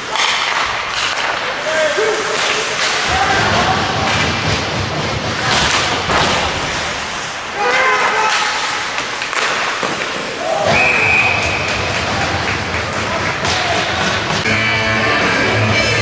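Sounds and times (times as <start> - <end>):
pucks and bodies hitting boards: 0.0 - 14.5
players shouting: 1.4 - 6.4, 7.4 - 9.4, 10.2 - 16.0
referee whistle: 10.6 - 11.8.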